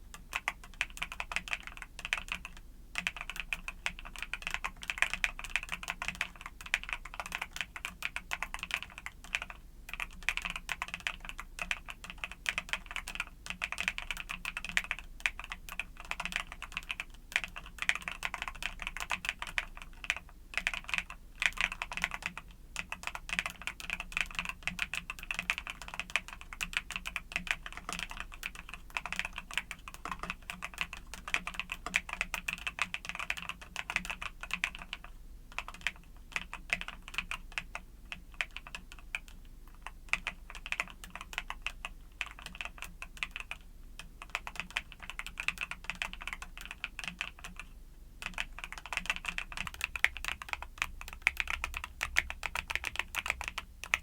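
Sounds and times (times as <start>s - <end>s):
mechanical keyboard typing: 0.1s - 54.0s.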